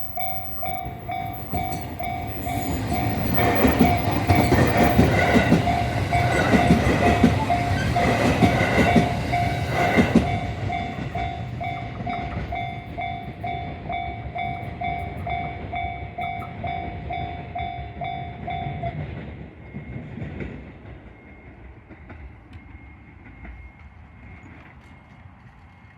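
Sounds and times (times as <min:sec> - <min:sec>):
level crossing warning bell: 0:00.0 - 0:19.0
train wheels clattering on rails: 0:00.0 - 0:25.9.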